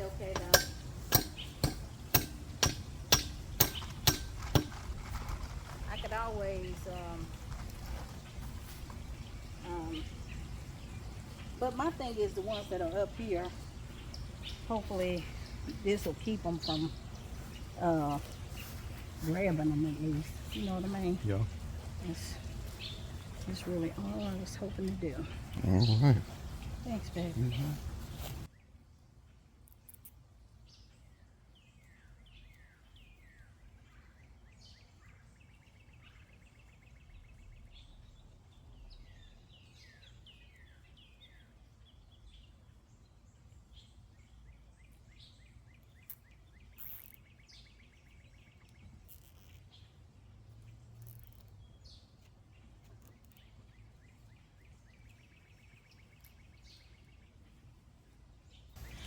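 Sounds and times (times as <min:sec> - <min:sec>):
bird chirps and trills: 0:00.0 - 0:04.9, 0:05.9 - 0:28.5, 0:43.7 - 0:50.0, 0:58.5 - 0:59.0.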